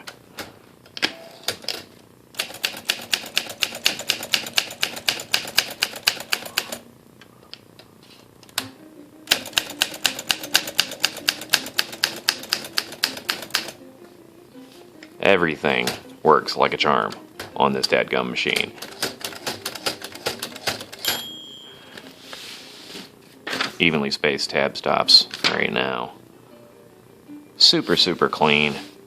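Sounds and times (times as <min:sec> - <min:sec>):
manual typewriter clicking: 0:00.0 - 0:06.8, 0:09.3 - 0:13.8, 0:18.5 - 0:21.2.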